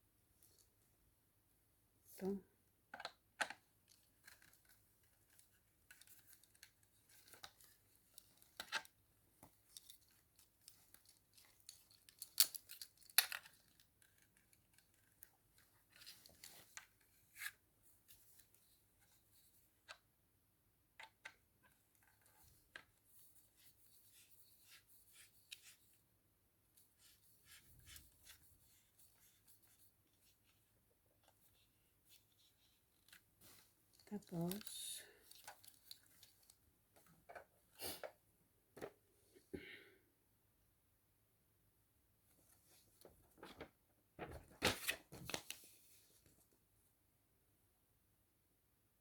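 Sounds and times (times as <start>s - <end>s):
small parts clicking and snipping: 9.7s - 15.2s.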